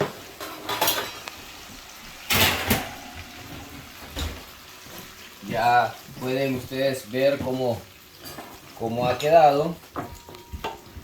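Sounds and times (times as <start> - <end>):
roasting pan clanking and scraping: 0.0 - 1.3, 2.2 - 5.1.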